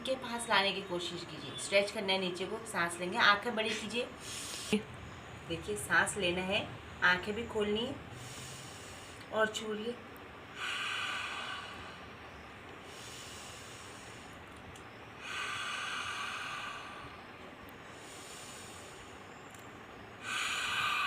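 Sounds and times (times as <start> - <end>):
person exhaling hard hissing: 4.2 - 4.8, 8.1 - 9.3, 10.5 - 12.2, 12.8 - 14.4, 15.2 - 17.2, 17.9 - 19.2, 20.2 - 21.0.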